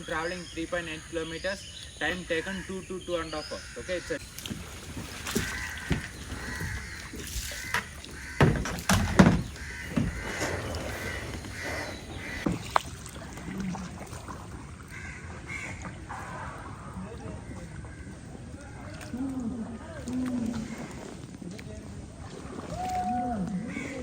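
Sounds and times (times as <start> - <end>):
crows cawing: 3.6 - 4.2, 5.3 - 12.5, 14.9 - 15.8
loud knocks: 7.6 - 12.6.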